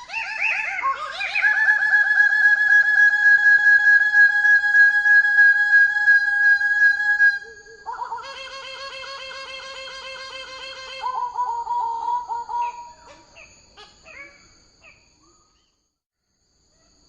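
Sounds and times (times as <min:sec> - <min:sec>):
bird whistling warble: 0:00.0 - 0:15.7.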